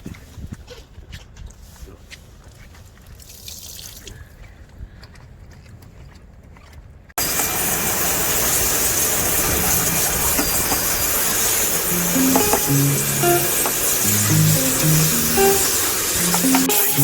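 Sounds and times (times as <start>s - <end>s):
water spraying hiss: 7.2s - 17.0s.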